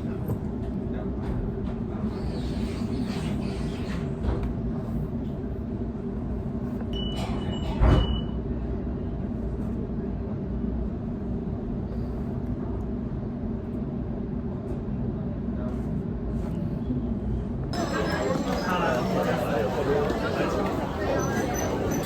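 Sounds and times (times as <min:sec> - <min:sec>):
train carriage rumble: 0:00.0 - 0:02.1, 0:17.3 - 0:22.0.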